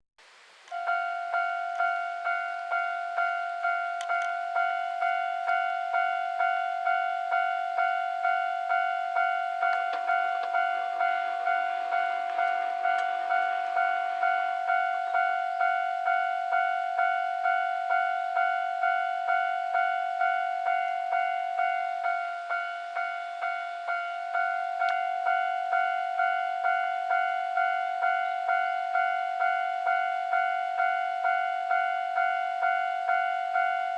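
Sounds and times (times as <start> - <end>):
level-crossing electronic bell: 0.7 - 33.9
broad rush of noise: 8.0 - 18.6.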